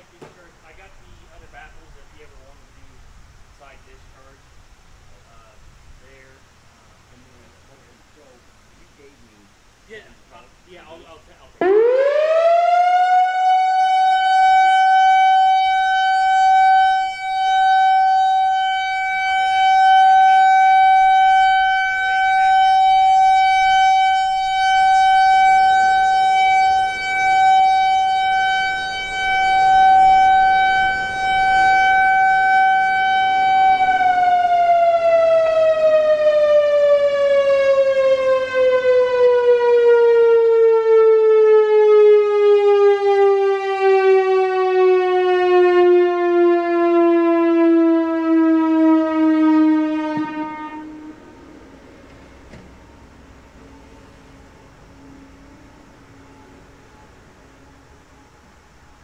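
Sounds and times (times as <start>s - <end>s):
electronic warning siren: 10.8s - 59.0s.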